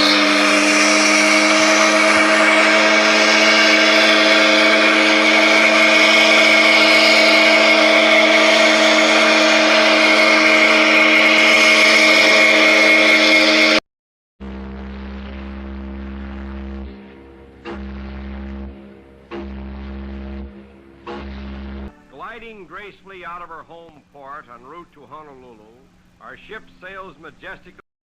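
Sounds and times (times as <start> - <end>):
ship's whistle blast: 0.0 - 13.8, 14.4 - 22.4.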